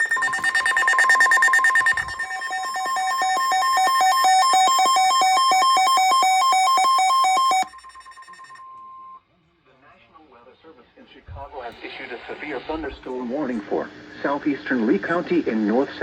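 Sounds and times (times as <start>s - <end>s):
rapid pulsing alert beep: 0.0s - 8.6s.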